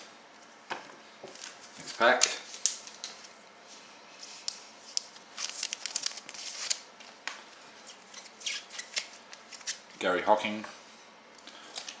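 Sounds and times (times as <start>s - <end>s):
wrapper tearing and crinkling: 4.4s - 6.9s.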